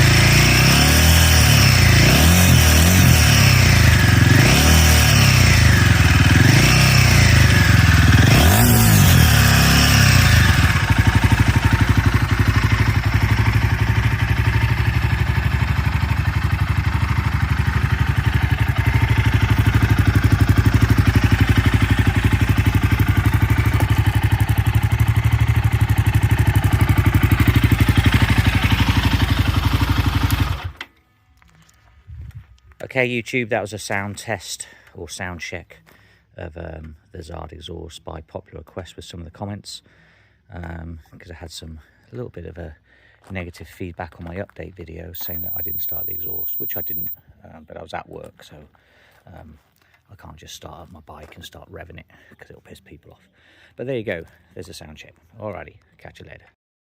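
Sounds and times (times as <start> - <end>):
motorcycle engine revving and idling: 0.0 - 30.8, 45.2 - 47.2.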